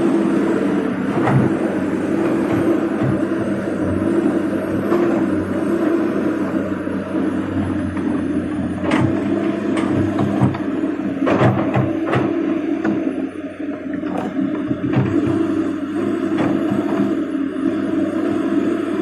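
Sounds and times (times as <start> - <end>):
excavator diesel engine running: 0.0 - 19.0
sharp knocks and clanks: 8.8 - 13.0.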